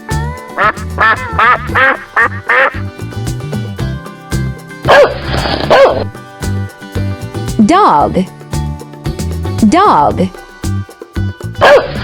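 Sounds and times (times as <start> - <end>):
children's music with a beat: 0.0 - 12.0
cartoon duck quacking: 0.6 - 2.8.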